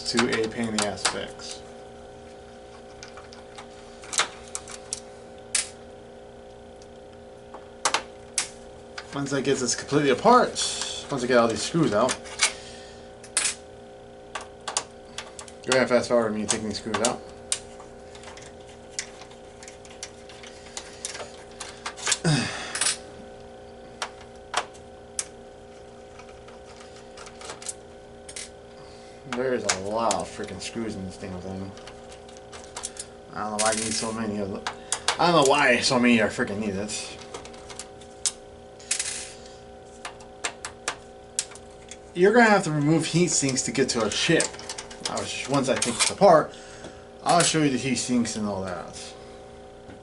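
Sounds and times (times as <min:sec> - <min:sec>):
steady low hum: 0:00.0 - 0:50.0
small parts being handled: 0:14.3 - 0:23.0, 0:23.9 - 0:28.6, 0:31.6 - 0:35.8, 0:36.9 - 0:46.4.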